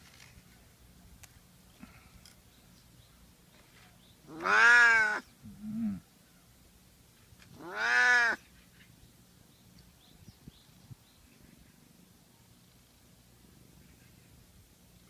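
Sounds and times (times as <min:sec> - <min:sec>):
cat meowing: 0:04.3 - 0:05.2, 0:07.6 - 0:08.4.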